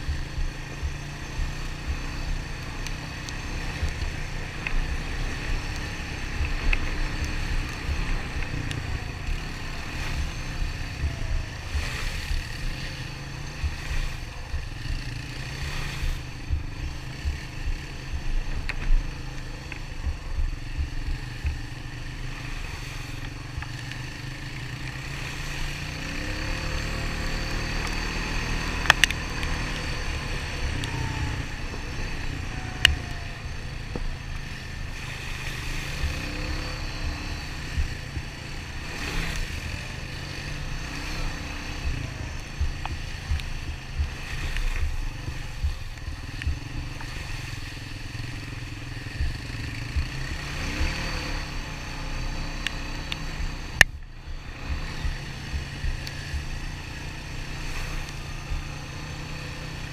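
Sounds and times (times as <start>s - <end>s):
atv engine running: 0.0s - 59.9s
sharp clicks: 22.6s - 51.8s.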